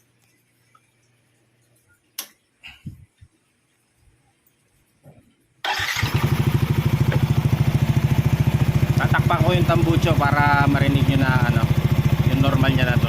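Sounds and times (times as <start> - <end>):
scooter engine starting and idling: 5.6 - 13.0.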